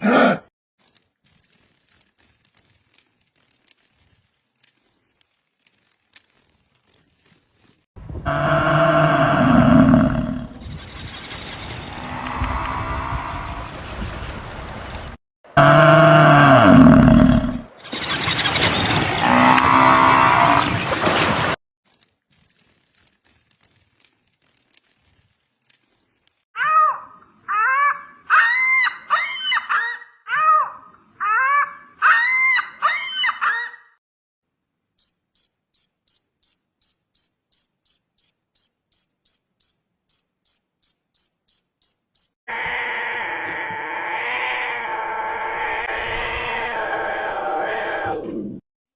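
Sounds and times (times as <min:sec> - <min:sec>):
animal calls rising and falling: 0:08.2 - 0:14.4, 0:15.6 - 0:21.5, 0:41.2 - 0:48.5
insect chirping: 0:10.6 - 0:12.3, 0:35.0 - 0:42.4.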